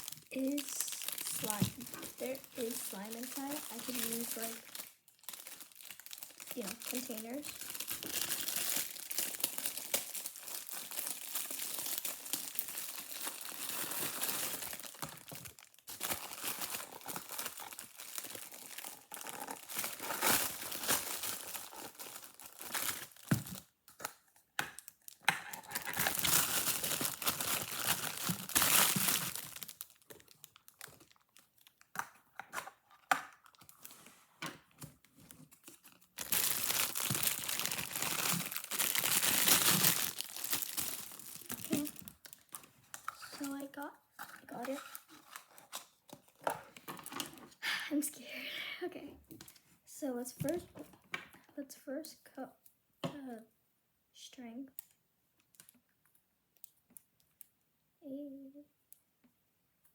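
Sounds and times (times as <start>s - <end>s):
plastic crinkling: 0.0s - 34.1s, 34.9s - 47.6s.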